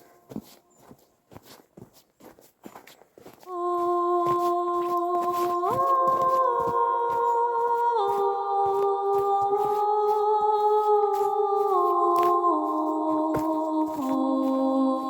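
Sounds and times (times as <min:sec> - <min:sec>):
choir humming chords: 0:03.5 - 0:15.0.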